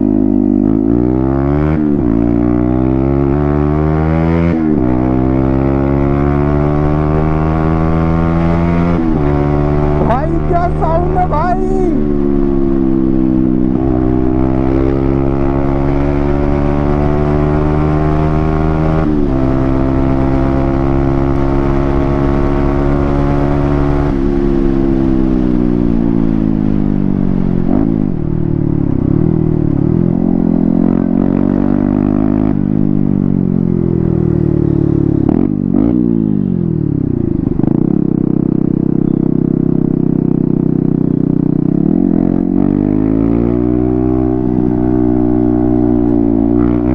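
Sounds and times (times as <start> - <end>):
motorcycle engine revving: 0.0 - 46.9.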